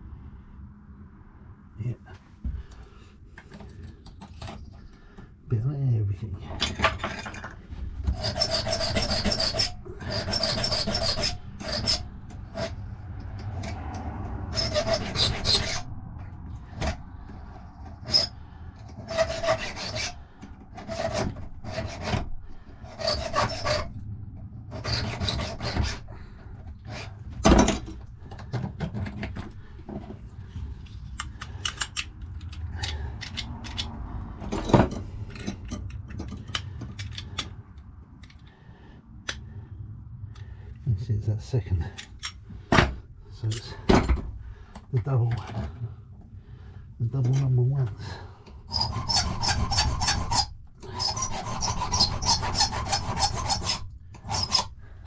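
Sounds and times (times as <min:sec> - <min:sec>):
file rasping on metal key: 0:06.6 - 0:13.8, 0:14.5 - 0:15.9, 0:18.0 - 0:24.0, 0:24.7 - 0:27.2, 0:47.4 - 0:54.9.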